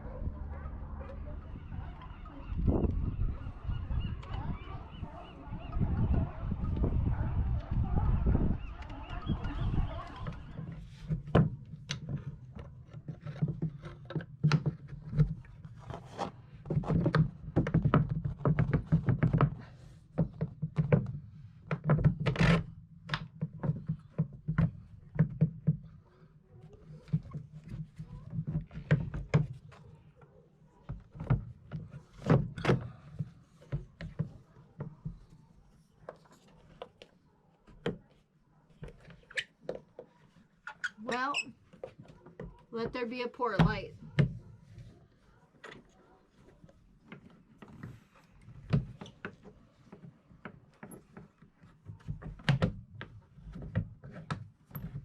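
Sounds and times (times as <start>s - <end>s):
knocks taps and thunks: 16.6s - 25.9s.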